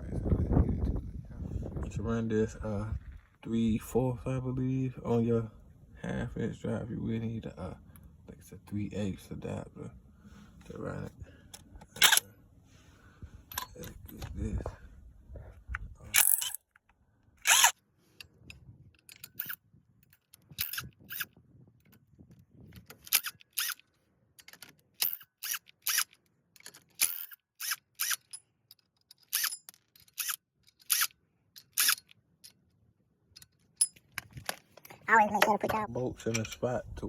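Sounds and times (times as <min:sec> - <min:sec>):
metal clicks of hand tools: 0:11.5 - 0:12.3, 0:15.7 - 0:21.3, 0:22.8 - 0:32.6, 0:33.3 - 0:36.7.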